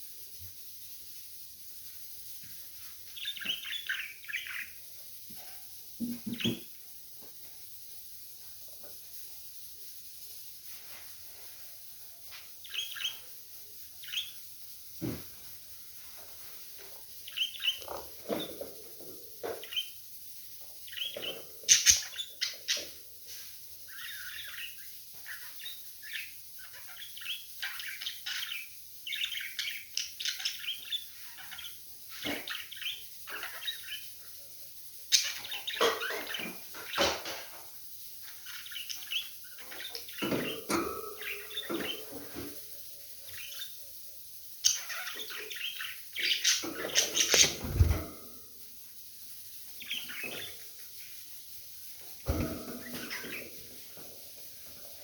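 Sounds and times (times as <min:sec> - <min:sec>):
budgerigars chirping and chattering: 0:03.1 - 0:06.7, 0:12.3 - 0:13.4, 0:14.0 - 0:14.4, 0:16.9 - 0:20.0, 0:20.7 - 0:34.3, 0:35.1 - 0:37.4, 0:38.2 - 0:43.9, 0:44.5 - 0:48.4, 0:49.7 - 0:50.7, 0:52.2 - 0:55.0.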